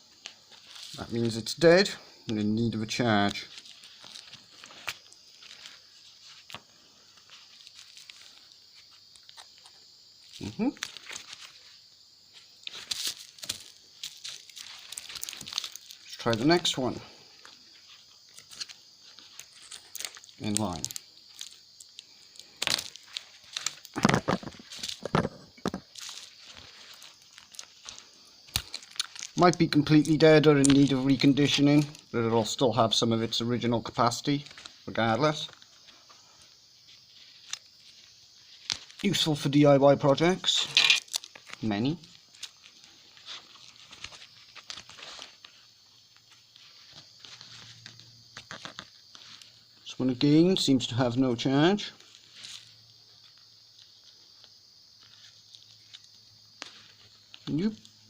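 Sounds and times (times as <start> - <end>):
tape crinkling: 0.0 - 1.5, 2.3 - 32.6, 33.8 - 39.5, 40.1 - 49.9, 51.8 - 58.0
faint rustling: 0.0 - 39.4.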